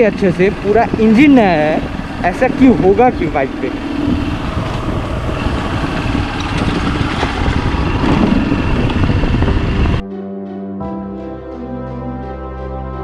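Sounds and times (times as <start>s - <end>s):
motorcycle engine running: 0.0s - 10.0s.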